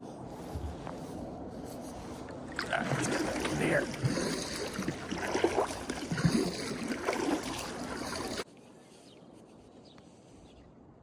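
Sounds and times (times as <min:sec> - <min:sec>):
paddle strokes splashing: 0:01.7 - 0:08.5
water rushing along hull: 0:01.7 - 0:08.5.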